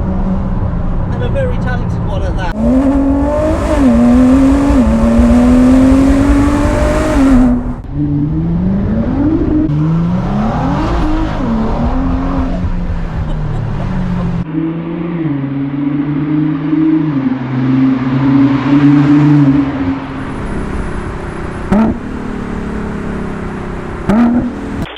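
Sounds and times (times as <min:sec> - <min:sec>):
exhaust crack: 0:02.4 - 0:07.9, 0:20.0 - 0:24.9
sports car engine accelerating: 0:02.5 - 0:24.9.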